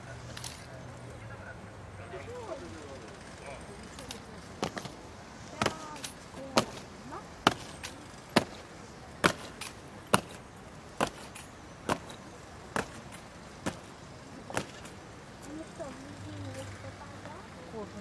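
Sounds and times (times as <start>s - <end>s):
boots stamping on paving: 4.6s - 5.0s, 5.6s - 15.0s.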